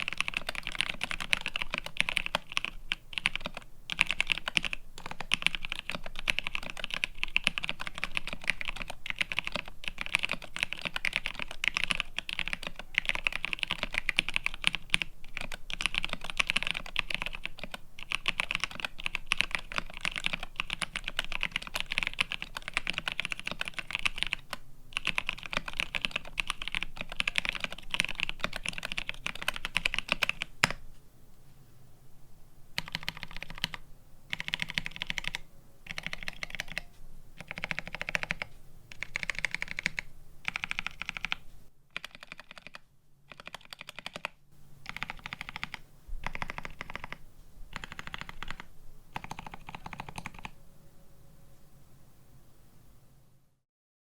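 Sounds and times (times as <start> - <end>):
fast mechanical keyboard typing: 0.0 - 30.8, 32.8 - 50.6.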